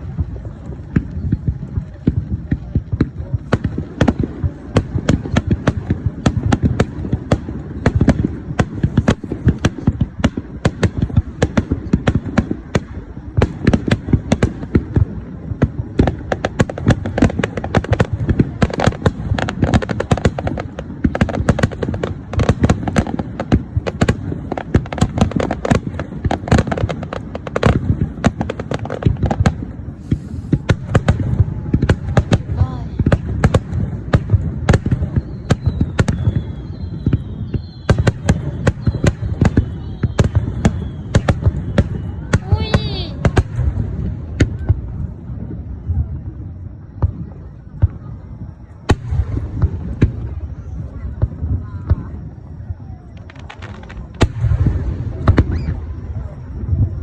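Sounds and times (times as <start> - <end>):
fireworks bangs and crackles: 0.0 - 57.0.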